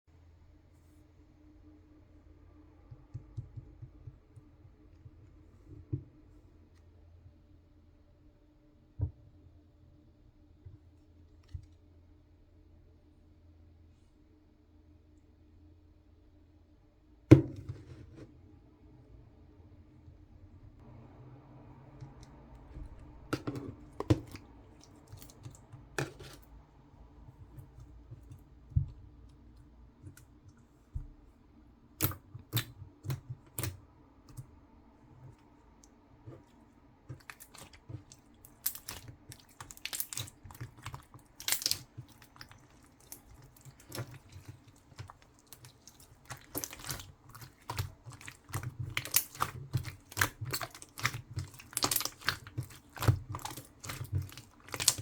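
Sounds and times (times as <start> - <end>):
hands kneading sticky slime: 21.9 - 55.0.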